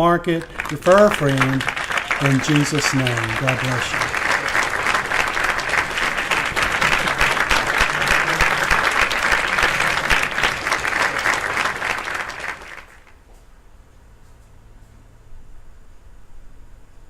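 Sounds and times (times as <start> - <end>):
crowd applauding: 0.0 - 13.2.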